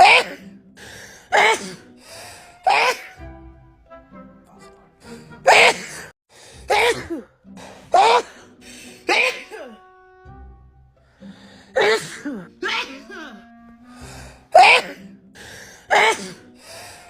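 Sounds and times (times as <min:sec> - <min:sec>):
woman sneezing: 0:00.0 - 0:00.4, 0:01.3 - 0:01.8, 0:02.7 - 0:03.2, 0:05.5 - 0:07.3, 0:08.0 - 0:08.3, 0:09.1 - 0:09.8, 0:11.8 - 0:13.3, 0:14.6 - 0:15.0.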